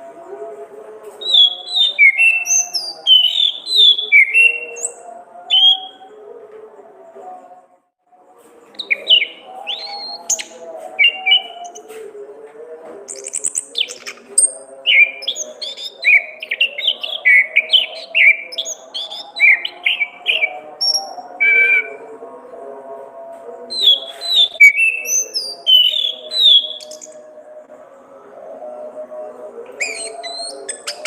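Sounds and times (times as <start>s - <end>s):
thrush singing whistled notes: 1.2s - 6.2s, 8.7s - 11.9s, 13.1s - 22.1s, 23.7s - 27.2s, 29.7s - 31.0s.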